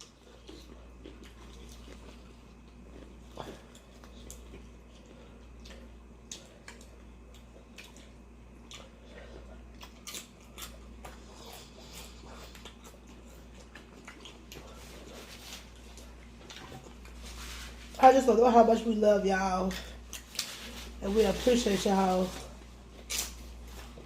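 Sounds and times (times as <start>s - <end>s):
people chewing food: 0.0s - 18.0s, 19.8s - 21.0s
steady low hum: 0.0s - 24.0s.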